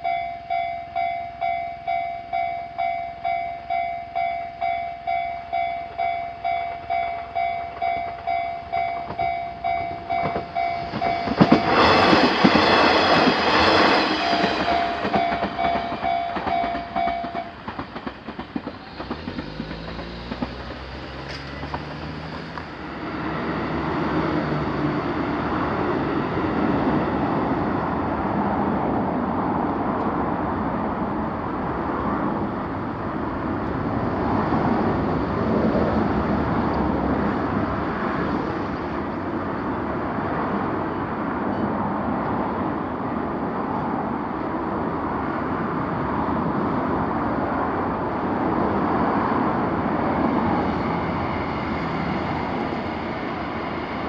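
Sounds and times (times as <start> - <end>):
railroad crossing warning bell: 0.0 - 17.9
train passing: 0.0 - 54.0.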